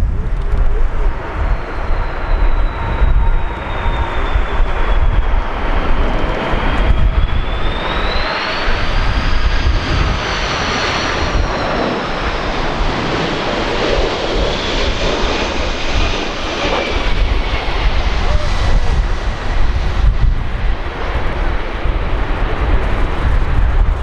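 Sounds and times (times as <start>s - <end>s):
jet engine rumble and whine: 0.0s - 24.0s
wind on microphone: 0.0s - 24.0s.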